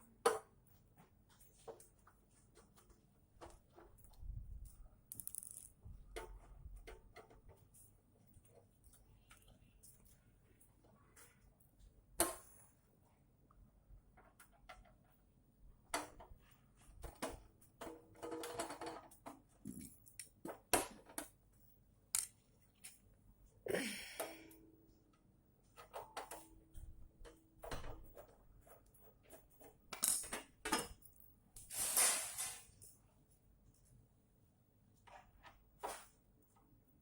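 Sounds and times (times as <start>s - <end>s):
tools and metal parts clicking: 4.0s - 7.8s, 22.1s - 23.0s, 28.0s - 31.2s
rustling scrapes: 31.6s - 32.8s.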